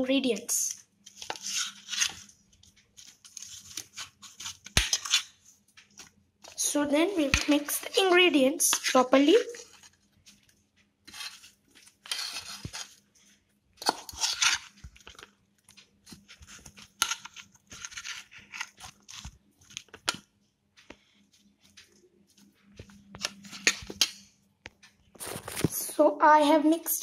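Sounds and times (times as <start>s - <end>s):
wet rustling and scraping in bowl: 1.0s - 20.1s, 25.1s - 26.0s.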